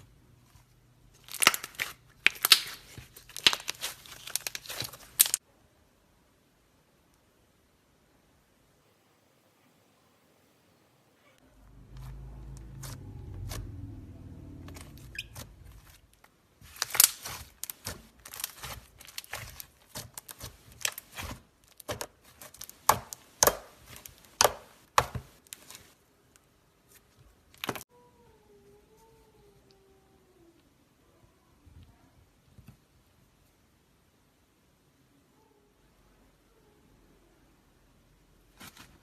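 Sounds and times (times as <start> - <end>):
slime squishing: 1.1 - 5.4, 11.8 - 26.0.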